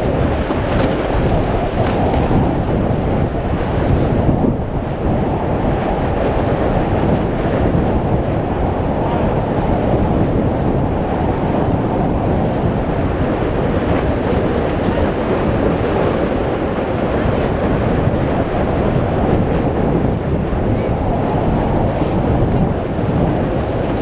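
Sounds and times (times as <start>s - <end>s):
volcanic vent roaring: 0.0s - 24.0s
wind buffeting microphone: 0.0s - 24.0s.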